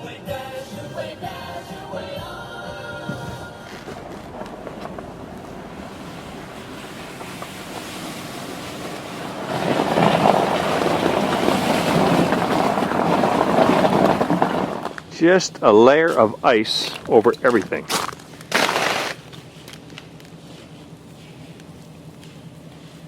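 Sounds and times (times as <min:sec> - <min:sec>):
steady rushing noise: 0:02.9 - 0:17.8.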